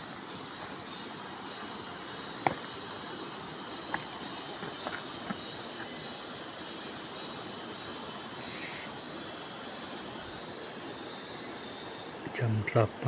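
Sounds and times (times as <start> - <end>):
even hiss: 0.0 - 13.0
insect chorus drone: 0.0 - 13.0
pulsing insect calls: 0.0 - 13.0.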